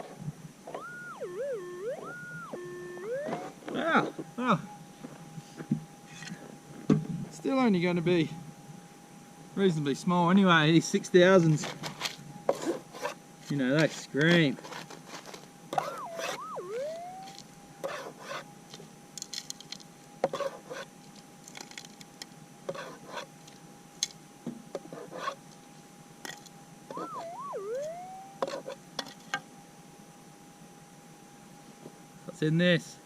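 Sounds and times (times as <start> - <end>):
warbling detector signals: 0.6 - 4.0, 15.8 - 18.4, 26.9 - 28.7
metal detector threshold tone: 0.7 - 3.8, 15.8 - 17.4, 26.9 - 28.6
rock handling clicks and scrapes: 11.4 - 15.5, 18.7 - 24.2.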